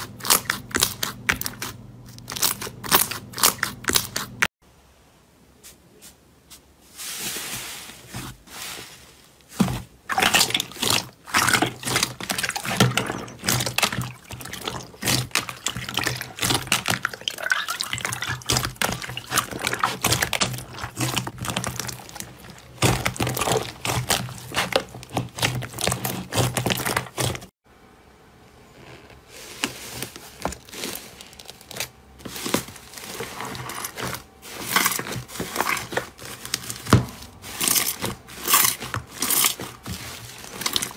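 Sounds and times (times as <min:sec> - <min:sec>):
slime squelching and popping: 0:09.6 - 0:27.5.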